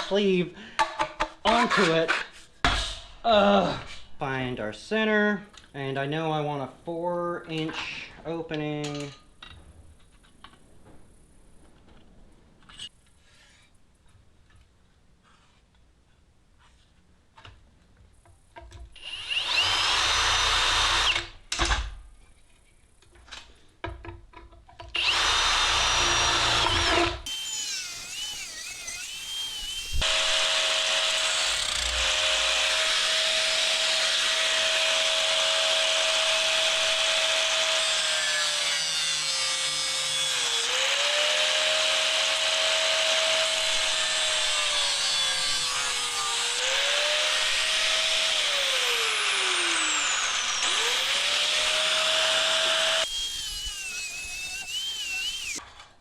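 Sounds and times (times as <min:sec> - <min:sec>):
power tool cutting metal: 0:19.0 - 0:21.3, 0:25.0 - 0:55.6
screechy metal scraping: 0:27.3 - 0:30.4.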